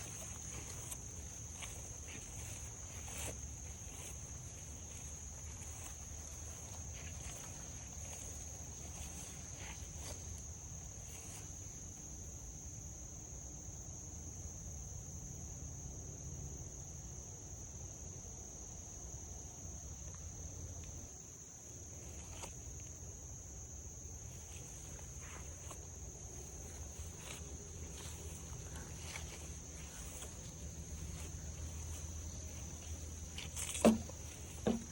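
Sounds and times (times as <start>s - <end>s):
footsteps crunching on trail: 0.0s - 11.6s, 24.1s - 34.9s
insects trilling: 0.0s - 34.9s.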